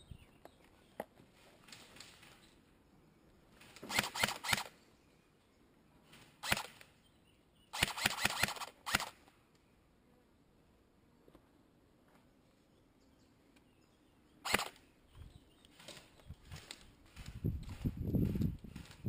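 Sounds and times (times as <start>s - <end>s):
airsoft guns firing: 3.8s - 4.7s, 7.8s - 9.2s, 14.5s - 14.8s.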